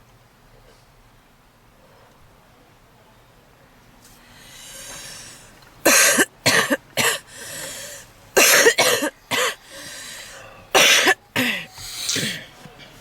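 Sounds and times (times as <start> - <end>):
heavy wheezing breaths: 4.2 - 5.6, 7.1 - 8.2, 9.2 - 10.8, 11.4 - 12.6
woman coughing: 5.9 - 7.3, 8.4 - 9.6, 10.7 - 12.5.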